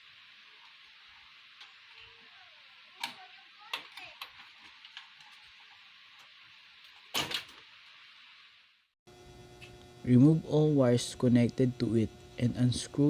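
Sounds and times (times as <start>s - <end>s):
steady hiss: 0.0s - 9.0s.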